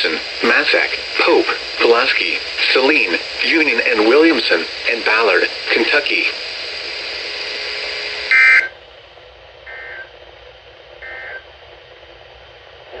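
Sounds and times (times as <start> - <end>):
radio static hiss: 0.0 - 13.0.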